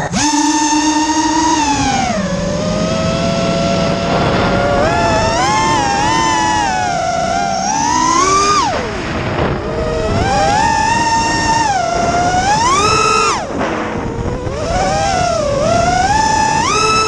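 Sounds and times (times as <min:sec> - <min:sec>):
quadcopter motors whining: 0:00.0 - 0:17.0.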